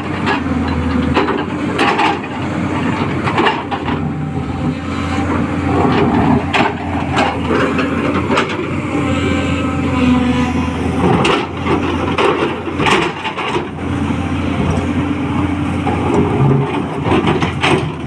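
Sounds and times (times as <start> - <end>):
excavator diesel engine running: 0.0 - 18.0
machine knocks and clanks: 15.8 - 18.0.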